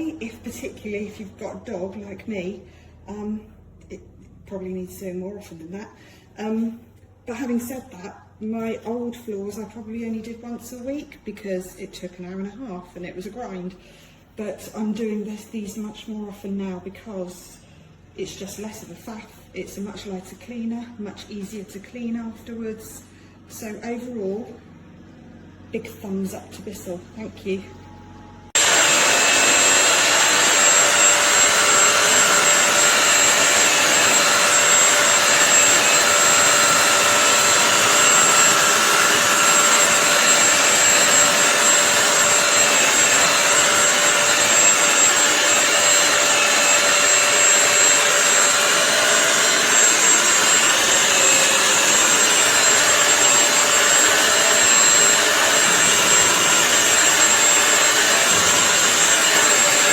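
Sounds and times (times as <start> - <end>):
floor cleaner motor running: 28.5 - 59.9.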